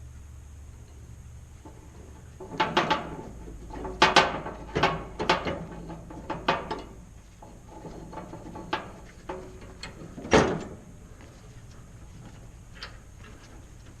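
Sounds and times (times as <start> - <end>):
hard objects knocking and clanking: 1.6 - 10.7.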